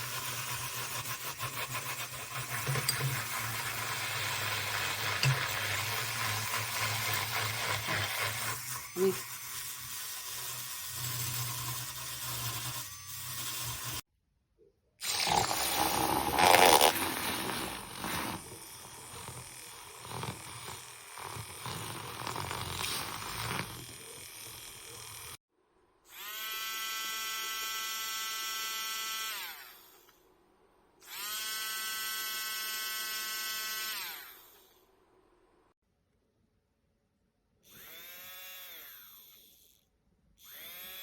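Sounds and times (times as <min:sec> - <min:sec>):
milk frother motor whirring: 0:00.0 - 0:14.1, 0:15.0 - 0:25.4.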